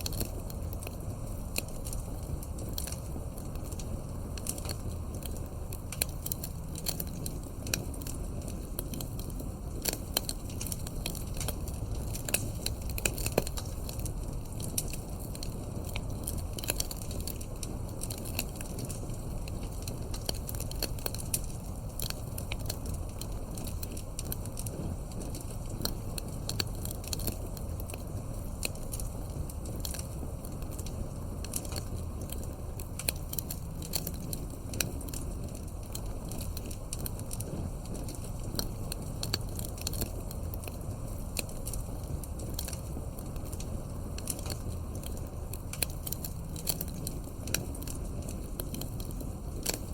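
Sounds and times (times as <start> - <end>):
fire pops and snaps: 0.0 - 49.9
low rumble of burning logs: 0.0 - 49.9
wood fire crackling: 0.0 - 49.9.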